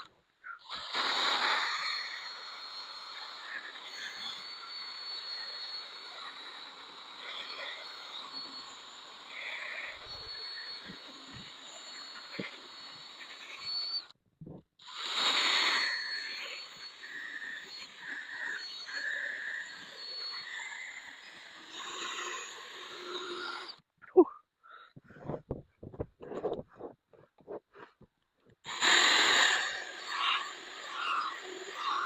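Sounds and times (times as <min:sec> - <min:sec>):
hand rubbing plastic lens: 0:25.0 - 0:28.2.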